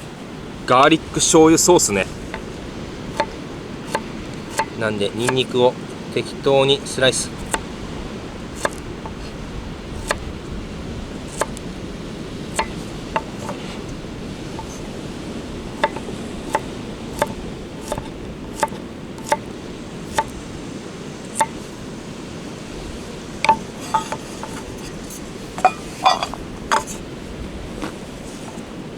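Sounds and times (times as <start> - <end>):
knife tapping cutting board: 3.1 - 5.5, 7.4 - 7.7, 8.6 - 8.8, 10.0 - 10.2, 11.3 - 11.6, 12.5 - 13.6, 15.8 - 19.4, 20.1 - 20.4, 21.4 - 21.6, 23.4 - 24.7, 25.6 - 27.0.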